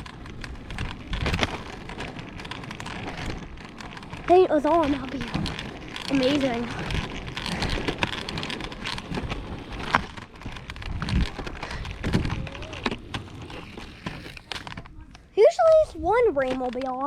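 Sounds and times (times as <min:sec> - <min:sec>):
crackles and knocks: 0:00.0 - 0:17.0.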